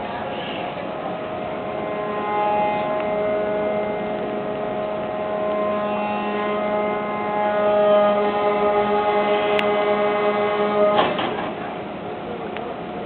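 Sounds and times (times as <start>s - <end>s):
machinery drone: 0.0s - 13.0s.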